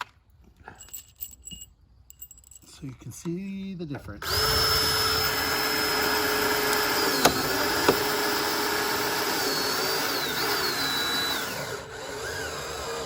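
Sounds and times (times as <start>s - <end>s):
power drill driving a screw: 4.2s - 13.0s.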